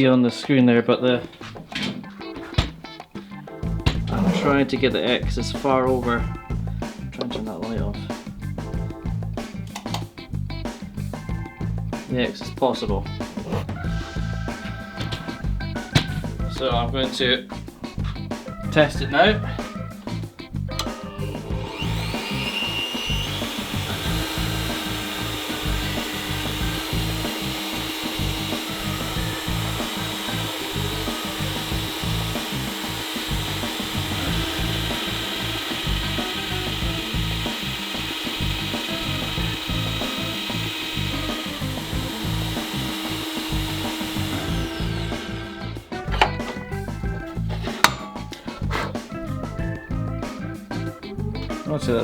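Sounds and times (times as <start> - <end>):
drill press whining and drilling wood: 20.8 - 46.4.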